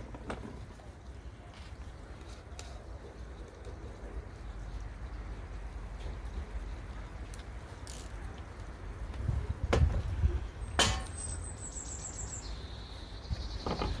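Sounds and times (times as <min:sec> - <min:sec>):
wind rumble on microphone: 0:08.7 - 0:10.7
songbird singing: 0:10.2 - 0:14.0.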